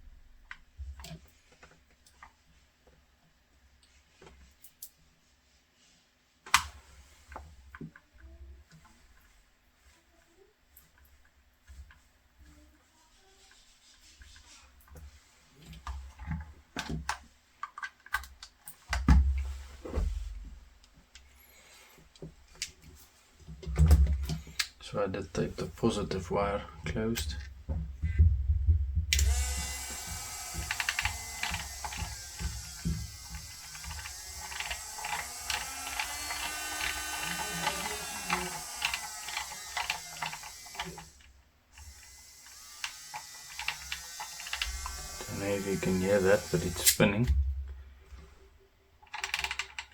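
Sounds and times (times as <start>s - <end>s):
clicks and rattles of handling: 14.3s - 21.3s, 49.0s - 49.9s
wire and tape clicks and knocks: 26.9s - 42.0s
small motor whining: 29.2s - 47.0s.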